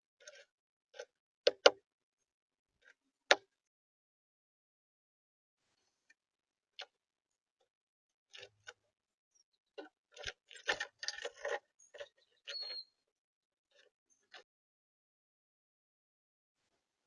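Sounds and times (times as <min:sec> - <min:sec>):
thin high bird chirp: 0:11.7 - 0:13.0.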